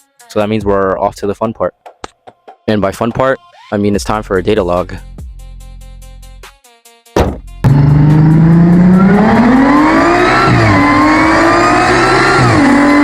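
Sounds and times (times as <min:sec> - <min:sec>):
car engine at full throttle: 0:07.6 - 0:13.0.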